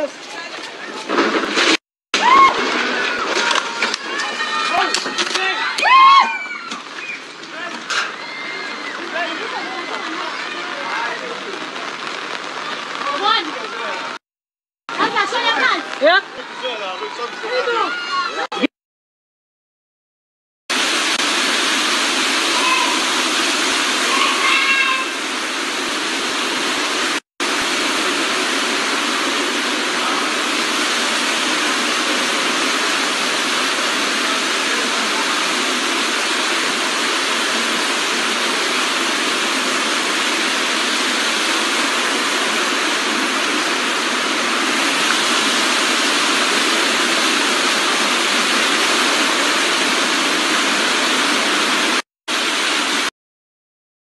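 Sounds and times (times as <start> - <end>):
floodwater rushing: 0.0 - 14.2, 15.0 - 18.7, 20.7 - 53.1.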